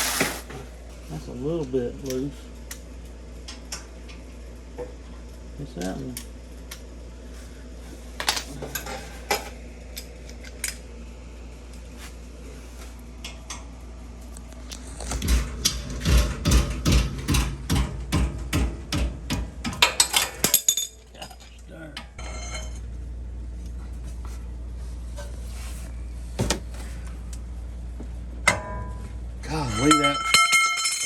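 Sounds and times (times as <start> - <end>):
sharp knocks: 15.2 - 19.9.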